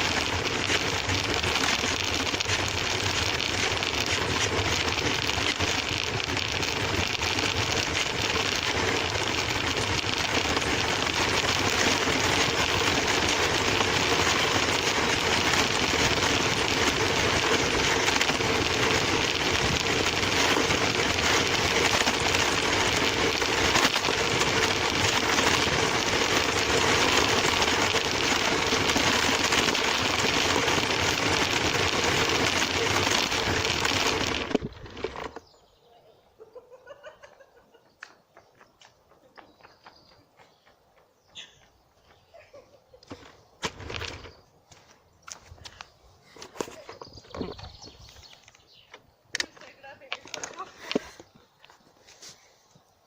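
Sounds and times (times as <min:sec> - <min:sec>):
toy car electric motor running: 0:00.0 - 0:35.4.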